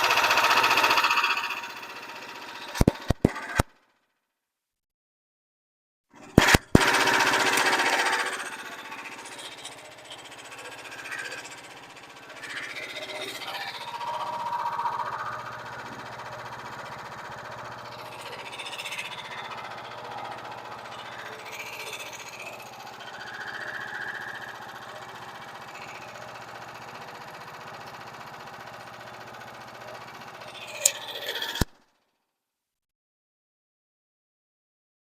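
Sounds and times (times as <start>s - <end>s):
bandsaw mill humming: 0.0s - 3.6s, 6.2s - 31.7s
sharp click: 2.7s - 3.7s, 6.3s - 8.4s, 30.6s - 31.7s.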